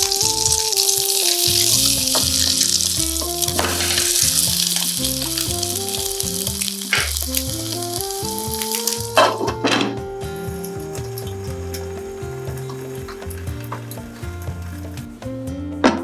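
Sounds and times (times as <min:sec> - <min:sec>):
food sizzling in a frying pan: 0:00.0 - 0:09.5
light background music: 0:00.0 - 0:16.0.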